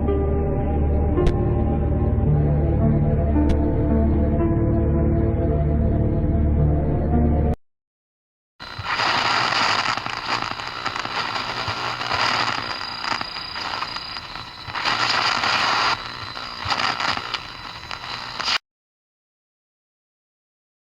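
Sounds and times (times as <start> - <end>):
loud crackling static hiss: 8.6 - 18.6.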